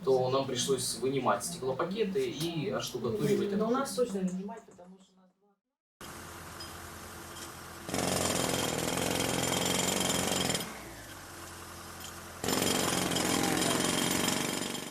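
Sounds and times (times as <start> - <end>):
power tool running: 6.0 - 14.9.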